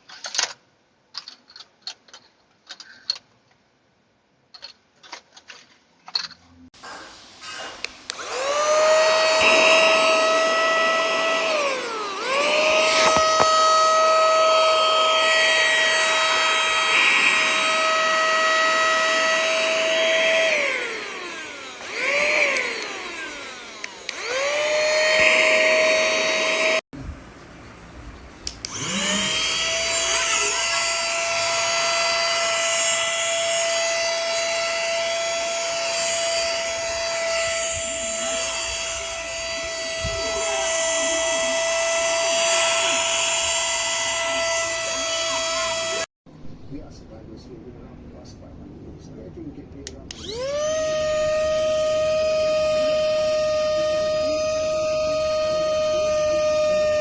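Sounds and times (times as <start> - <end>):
small vacuum motor whining: 6.8 - 26.8, 28.5 - 46.1, 50.1 - 57.0.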